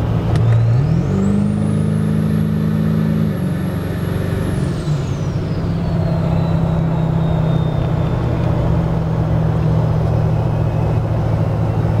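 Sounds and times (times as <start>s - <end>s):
diesel engine running: 0.0s - 12.0s
turbo whistle falling in pitch: 5.8s - 8.4s.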